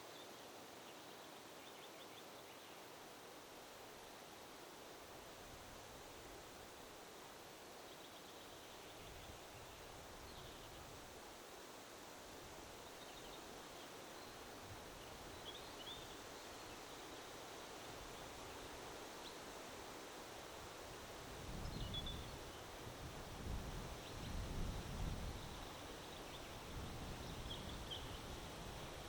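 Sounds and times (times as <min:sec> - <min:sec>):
wind: 0:00.0 - 0:29.0
faint bird chirps: 0:25.0 - 0:29.0.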